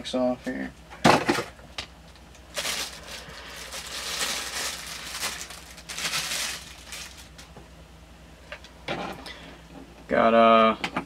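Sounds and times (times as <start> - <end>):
packaging rustling and crinkling: 2.4 - 7.6.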